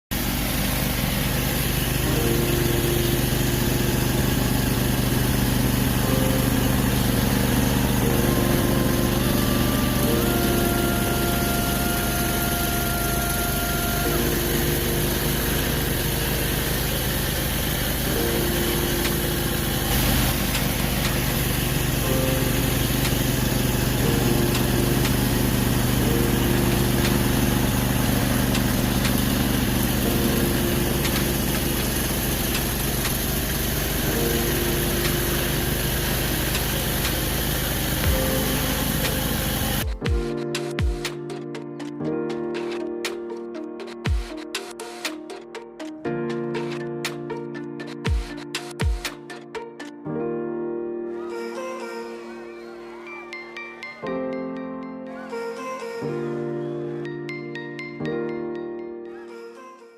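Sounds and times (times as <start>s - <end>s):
pressure washer engine running: 0.0s - 42.8s
spray hissing: 0.2s - 39.9s.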